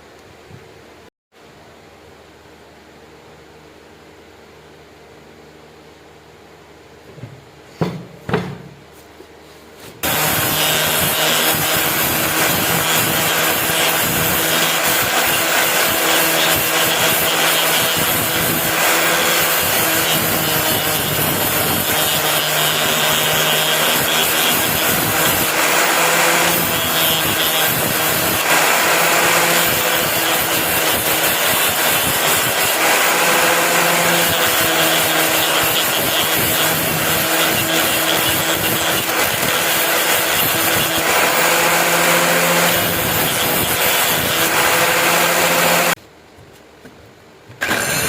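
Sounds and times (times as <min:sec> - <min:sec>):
metal rasping on grinder: 0:10.0 - 0:46.0
power tool grinding metal: 0:10.0 - 0:46.0, 0:47.6 - 0:48.0.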